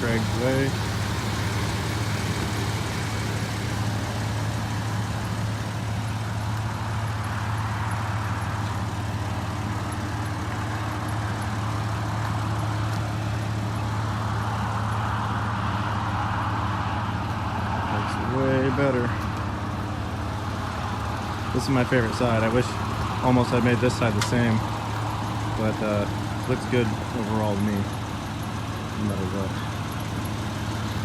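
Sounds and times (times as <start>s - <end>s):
outdoor road noise: 0.0s - 31.0s
vehicle engine idling: 0.0s - 31.0s.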